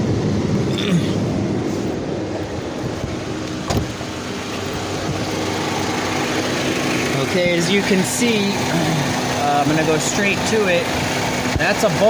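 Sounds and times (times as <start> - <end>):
car ventilation blower humming: 0.0 - 12.0.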